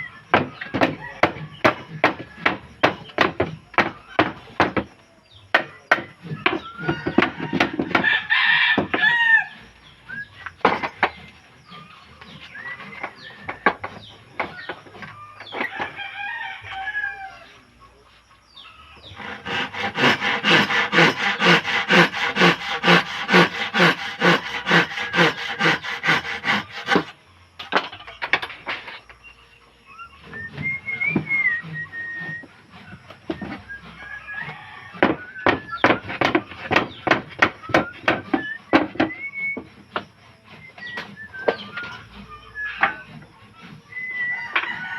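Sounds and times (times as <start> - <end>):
woodworking knocks and strikes: 0.3 - 9.2, 10.4 - 11.3, 13.0 - 16.0, 19.2 - 29.2, 35.0 - 40.1
rooster crowing: 0.8 - 2.8, 6.6 - 9.6, 15.5 - 17.6, 33.8 - 35.4, 44.0 - 44.9.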